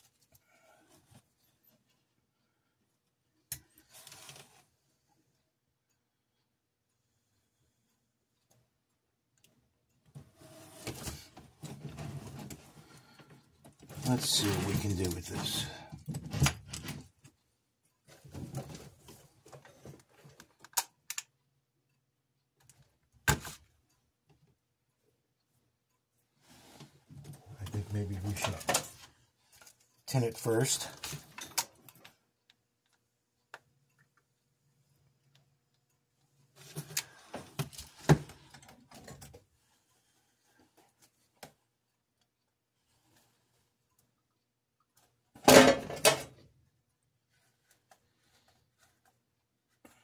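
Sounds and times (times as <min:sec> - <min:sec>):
parts rustling on a workbench: 0:03.6 - 0:04.7
tools and parts clicking: 0:20.4 - 0:21.4.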